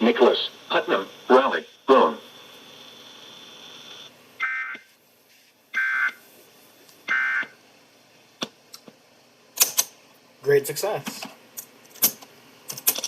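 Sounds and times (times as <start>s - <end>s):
sharp clicks: 9.6s - 9.9s.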